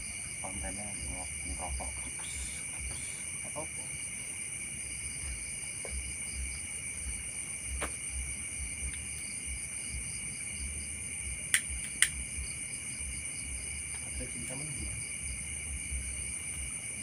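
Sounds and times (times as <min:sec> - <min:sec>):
crickets trilling: 0:00.0 - 0:17.0
faint low rumble: 0:04.8 - 0:17.0
sharp click: 0:11.5 - 0:12.2.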